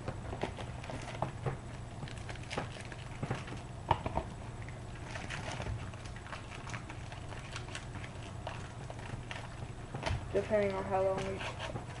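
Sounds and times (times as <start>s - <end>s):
wrapper crinkling: 2.0s - 3.7s.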